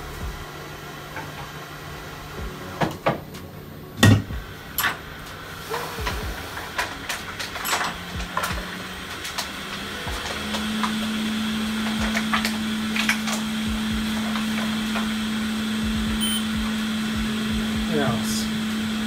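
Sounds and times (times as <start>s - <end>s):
steady low hum: 0.0s - 19.0s
small tools clicking and knocking: 6.8s - 10.9s.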